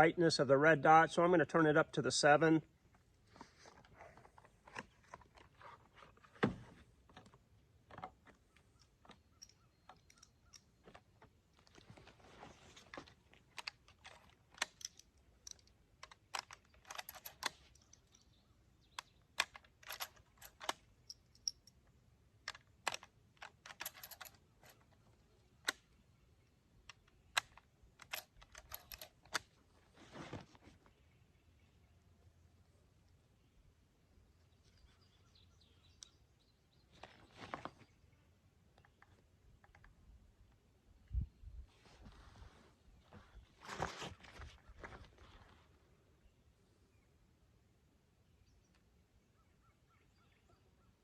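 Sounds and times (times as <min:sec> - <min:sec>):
small clicks and taps of rifle: 0:02.9 - 0:29.7, 0:38.7 - 0:40.6.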